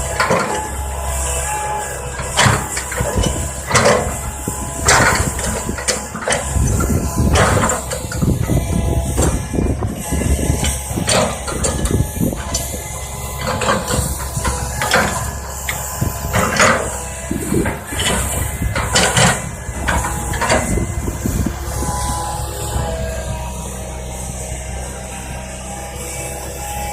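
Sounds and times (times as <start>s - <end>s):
diesel engine rumbling: 0.0s - 26.9s
excavator bucket clanks and knocks: 2.4s - 21.6s.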